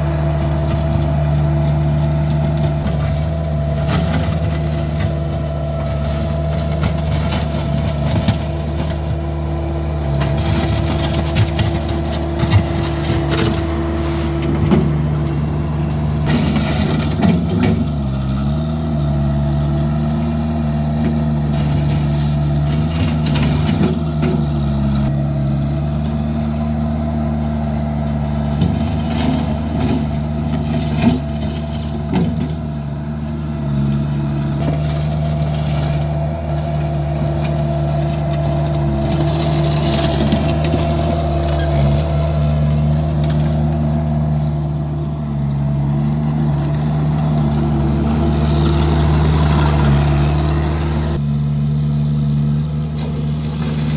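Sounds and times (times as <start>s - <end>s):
skid steer engine running: 0.0s - 53.9s
short knocks and scrapes: 0.4s - 9.3s, 10.0s - 18.6s, 28.2s - 33.0s, 33.6s - 51.2s.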